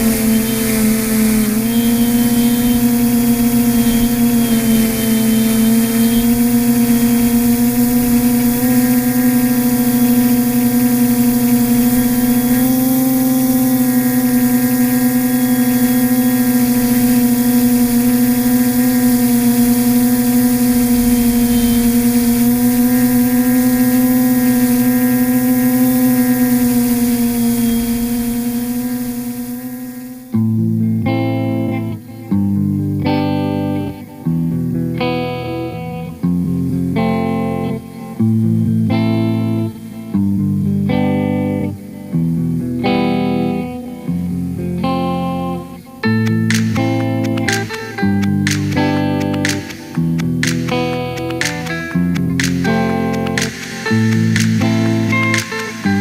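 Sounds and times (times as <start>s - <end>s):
drone motors humming: 0.0s - 30.3s, 46.1s - 56.0s
guitar plucking chords: 0.0s - 56.0s.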